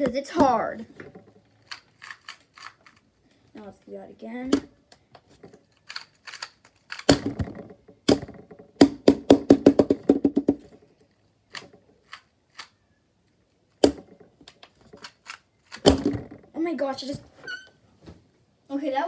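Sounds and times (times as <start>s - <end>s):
speed cube clicking turns: 1.6s - 3.0s, 5.7s - 7.4s, 11.5s - 12.8s, 15.0s - 16.1s.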